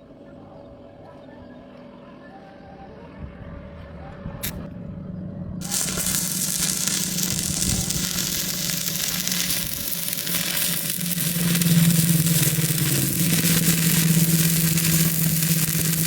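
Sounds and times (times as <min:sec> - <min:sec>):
low electrical hum: 0:04.0 - 0:16.0
welding arc crackling hiss: 0:05.6 - 0:16.0.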